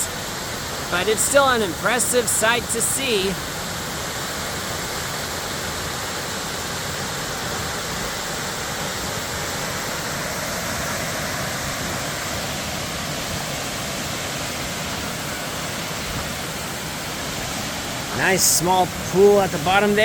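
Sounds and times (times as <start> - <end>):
waterfall pouring into pool: 0.0 - 1.2, 2.0 - 20.0.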